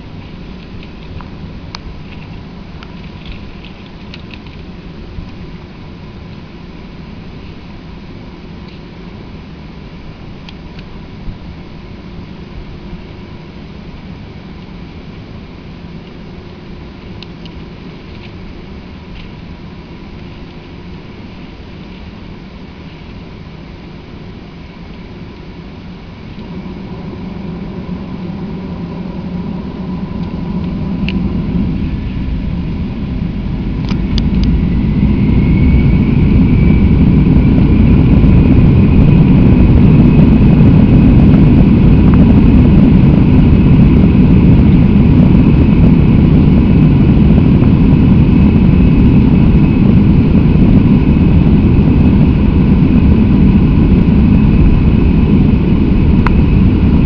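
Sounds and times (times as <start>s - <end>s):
jet engines roaring: 0.0s - 57.0s.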